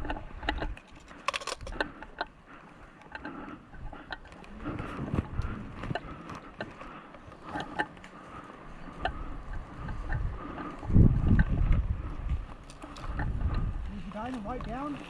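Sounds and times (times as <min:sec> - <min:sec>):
airsoft guns clicking: 0:00.0 - 0:02.3
wind rumbling on microphone: 0:00.0 - 0:15.0.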